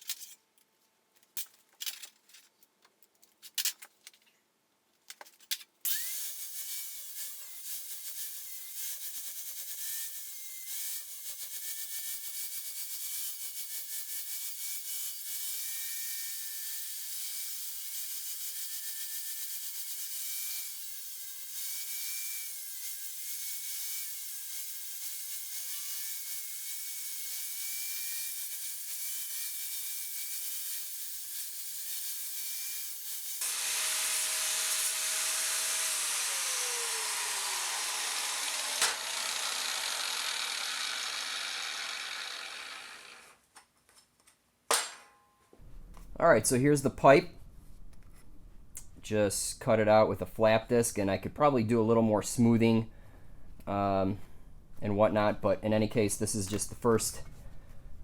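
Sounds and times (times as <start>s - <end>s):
angle grinder grinding metal: 5.9s - 43.4s.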